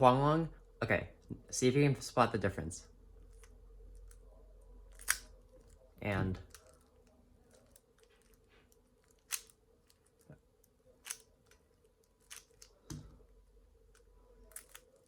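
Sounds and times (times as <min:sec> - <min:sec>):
plastic puzzle cube clicking: 0:04.9 - 0:05.3, 0:09.1 - 0:13.0, 0:13.9 - 0:15.0.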